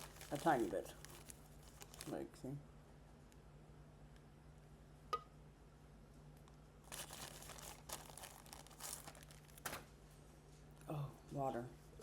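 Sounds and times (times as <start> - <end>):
packaging crinkling: 0.0 - 2.2, 6.8 - 9.9
faint steady hum: 0.0 - 12.0.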